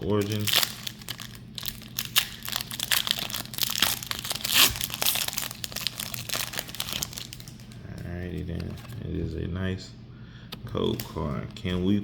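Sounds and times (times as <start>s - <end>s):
foil wrapper crinkling and tearing: 0.0s - 9.0s.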